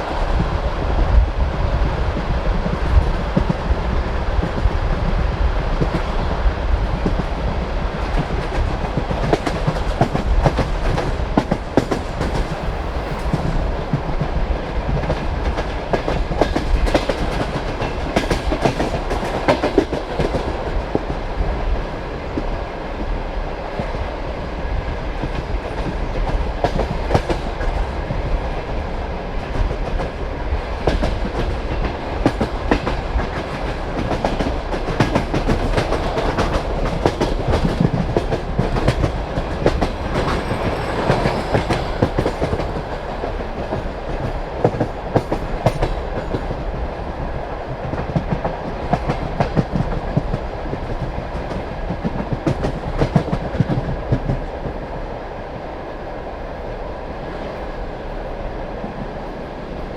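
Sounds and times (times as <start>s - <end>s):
train carriage rumble: 0.0s - 59.9s
train wheels clacking: 6.9s - 21.2s, 25.2s - 28.8s, 29.4s - 46.8s, 47.7s - 54.8s.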